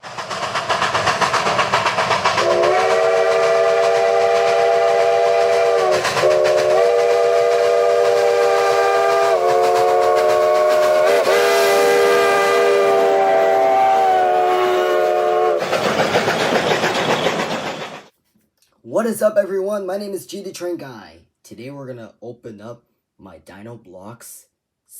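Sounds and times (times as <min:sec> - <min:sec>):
moving train noise: 0:00.0 - 0:18.1
train horn chime blasts: 0:02.4 - 0:15.6.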